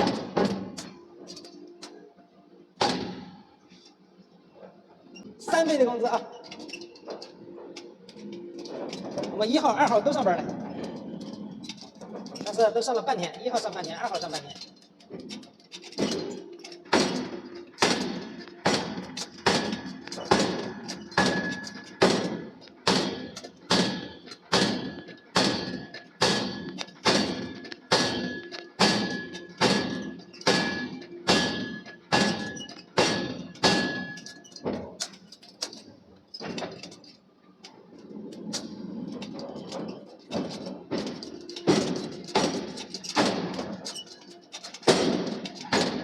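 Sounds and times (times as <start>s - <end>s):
forging hammer striking steel: 2.8s - 3.4s, 16.0s - 34.5s, 41.1s - 44.1s, 44.8s - 46.0s.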